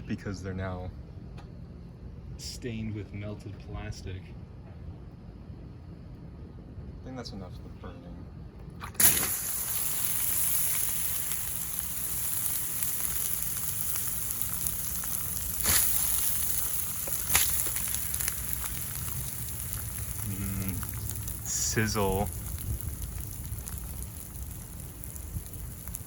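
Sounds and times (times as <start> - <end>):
burning plastic sizzling: 8.8 - 26.0
sharp pops: 8.8 - 26.0.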